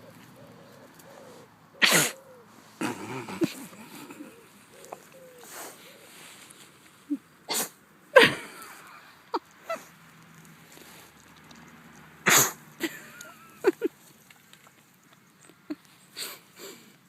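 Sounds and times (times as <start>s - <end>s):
pigs sneezing: 1.8s - 4.4s, 7.5s - 8.3s, 12.2s - 13.3s.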